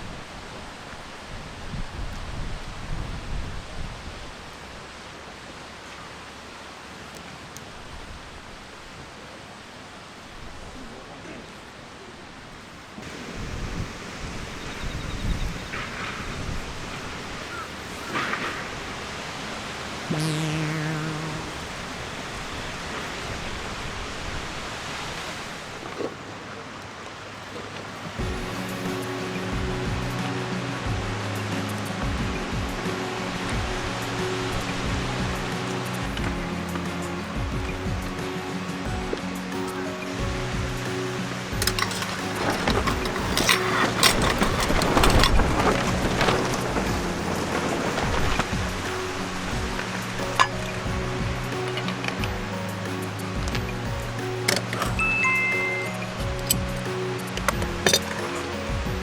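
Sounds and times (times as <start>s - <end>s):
strong wind buffeting microphone: 0.0s - 4.8s, 13.0s - 25.9s, 28.1s - 55.1s.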